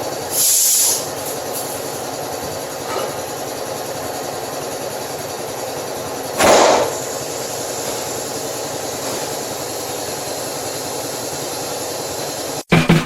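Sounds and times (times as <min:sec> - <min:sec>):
machine drone: 0:00.0 - 0:13.0
hiss of air: 0:00.2 - 0:02.0.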